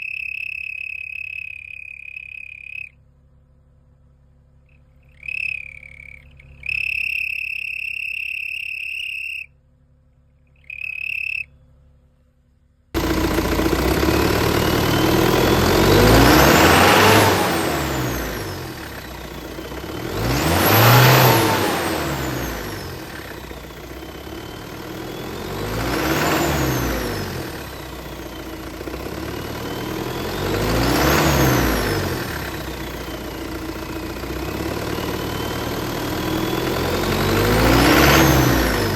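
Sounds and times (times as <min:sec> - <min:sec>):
car engine revving: 0:13.0 - 0:38.9
faint high rising tones: 0:13.0 - 0:38.9
steady high whistle tone: 0:14.6 - 0:37.8.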